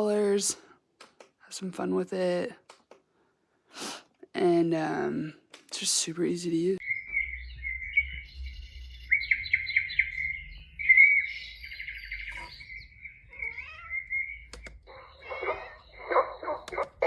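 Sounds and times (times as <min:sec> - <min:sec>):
lower sound: 0:06.8 - 0:12.3
bird chirps and trills: 0:06.8 - 0:17.0.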